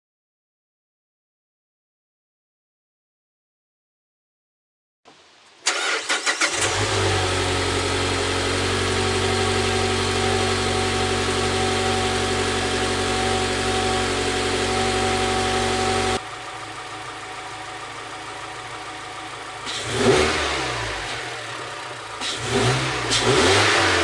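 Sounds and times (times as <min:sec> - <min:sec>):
car engine cranking: 0:05.6 - 0:09.3, 0:18.6 - 0:24.0
car engine idling: 0:05.7 - 0:24.0.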